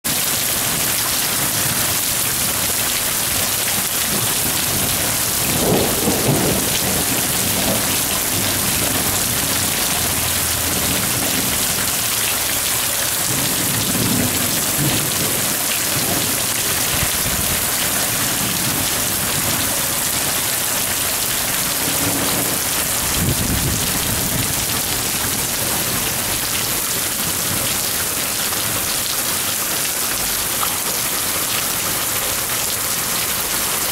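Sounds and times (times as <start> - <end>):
heavy rain falling: 0.0 - 33.9.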